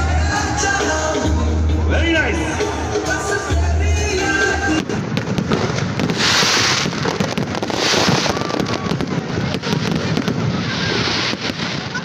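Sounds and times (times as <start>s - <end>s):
fireworks crackling and popping: 4.2s - 12.0s
fireworks hissing rush: 4.2s - 12.0s.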